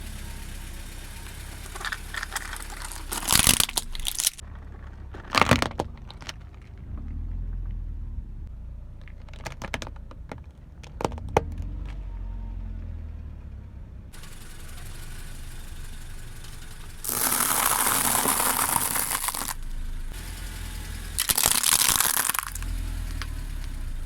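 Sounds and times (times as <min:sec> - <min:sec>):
low rumble of car: 0:00.0 - 0:24.0
sharp cracks: 0:01.2 - 0:07.2, 0:16.6 - 0:20.2, 0:21.2 - 0:23.8
tyres crushing crunchy objects: 0:01.3 - 0:07.5, 0:09.0 - 0:12.0, 0:17.0 - 0:19.6, 0:21.2 - 0:23.8.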